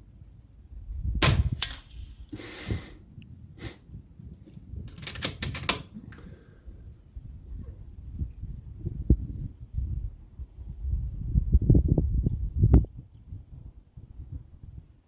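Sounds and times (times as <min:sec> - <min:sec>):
metallic clicks of rifle action: 0:01.2 - 0:02.2, 0:04.9 - 0:06.2
air rifle shot: 0:01.2 - 0:02.6.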